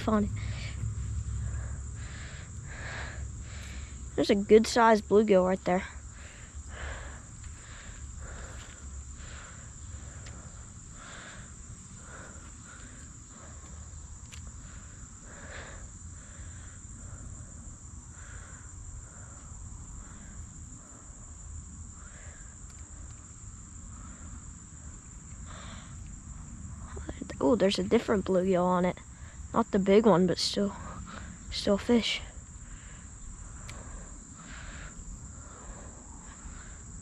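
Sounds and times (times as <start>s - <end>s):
low rumble: 0.0s - 16.1s
insects trilling: 0.0s - 37.0s.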